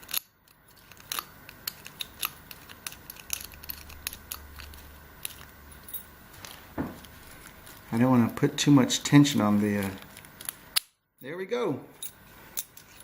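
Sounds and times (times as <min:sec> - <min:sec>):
lock pick clicks and scrapes: 0:00.0 - 0:06.6, 0:12.0 - 0:13.0.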